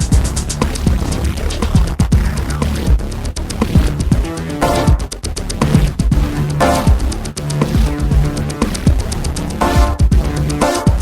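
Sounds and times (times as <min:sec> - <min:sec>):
held bass notes: 0:00.0 - 0:11.0
hi-hat ticks: 0:00.0 - 0:11.0
electronic synthesizer music: 0:03.4 - 0:11.0
kick drum dropping in pitch: 0:09.6 - 0:11.0.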